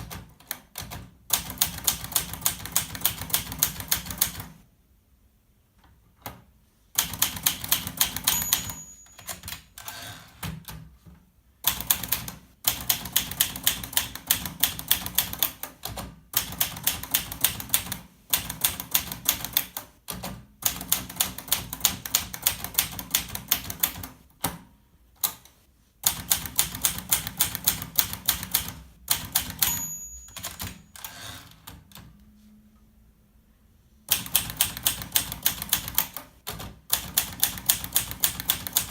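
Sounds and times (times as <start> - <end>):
typewriter bell ring: 7.8 - 10.2, 29.2 - 31.7
typewriter keys striking: 34.1 - 38.9.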